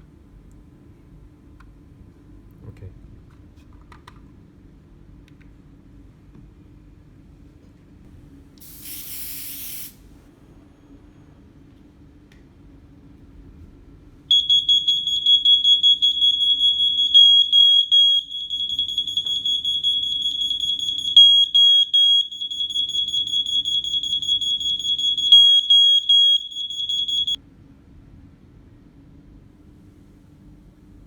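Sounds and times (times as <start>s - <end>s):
loud alarm beeps: 14.3s - 27.4s
smoke alarm pulsing tone: 14.3s - 27.4s.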